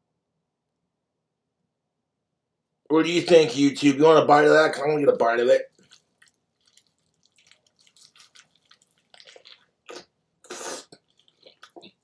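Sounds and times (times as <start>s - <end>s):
person chewing food: 5.6s - 12.0s.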